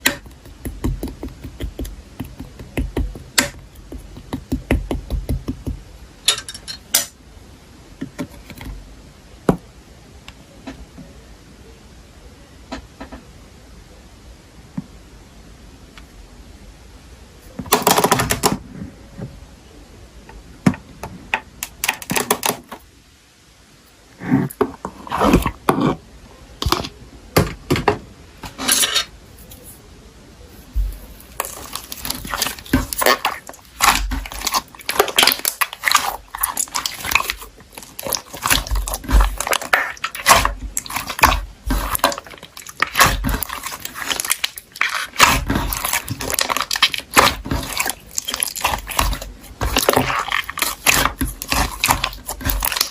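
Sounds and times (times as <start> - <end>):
slime popping and squishing: 0.0 - 5.8, 30.9 - 52.9.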